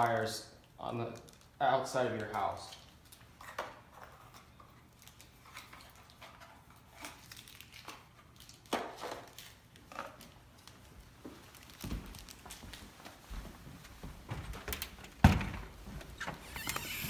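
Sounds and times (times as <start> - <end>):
plastic packaging crinkling: 4.9 - 12.8.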